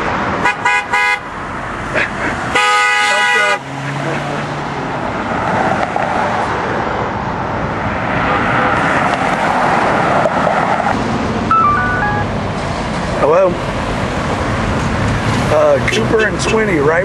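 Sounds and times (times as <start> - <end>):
traffic passing: 0.0 - 17.0
car horn honk: 0.4 - 1.3, 2.5 - 3.6, 11.5 - 12.4
short electronic tones: 11.5 - 12.3.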